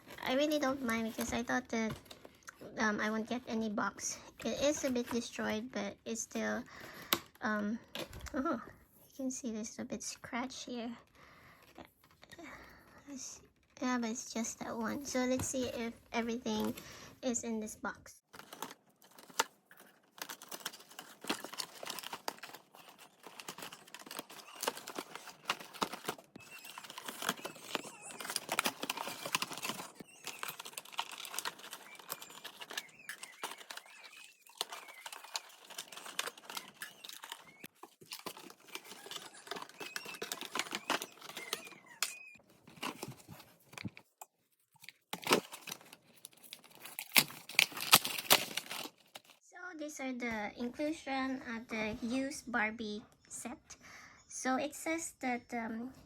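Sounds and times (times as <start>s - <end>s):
packaging crinkling: 18.3s - 44.1s, 44.8s - 49.4s
plastic pieces clacking: 18.3s - 44.1s, 44.8s - 49.4s.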